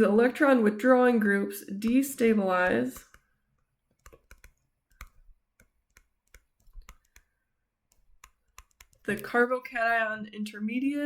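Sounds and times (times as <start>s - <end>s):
faint irregular clicks: 2.7s - 9.3s.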